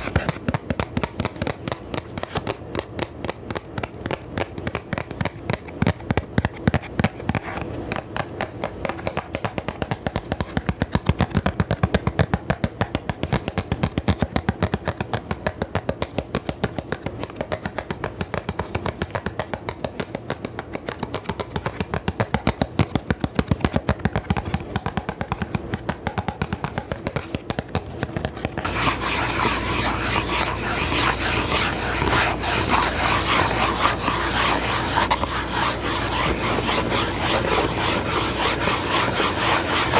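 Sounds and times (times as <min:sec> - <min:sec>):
rapid tapping: 0:07.9 - 0:39.9
scratching and rubbing: 0:28.5 - 0:39.9.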